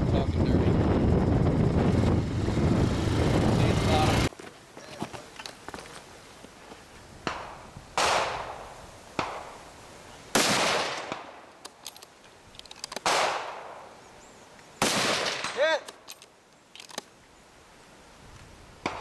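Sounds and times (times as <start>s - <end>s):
rifle shots: 7.3s - 8.6s, 10.3s - 11.5s, 13.0s - 13.8s, 14.8s - 15.7s.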